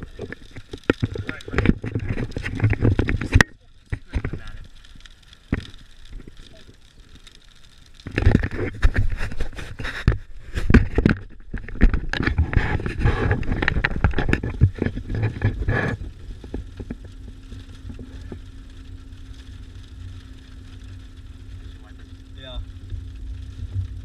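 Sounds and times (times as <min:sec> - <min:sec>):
knocking and scraping clatter: 0:00.0 - 0:04.7, 0:08.0 - 0:18.5
low vehicle hum: 0:13.6 - 0:24.0.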